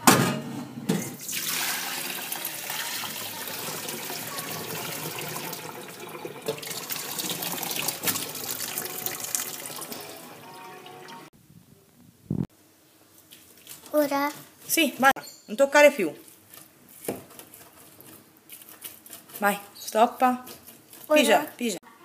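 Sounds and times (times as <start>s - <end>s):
tap water running into sink: 1.2s - 10.4s.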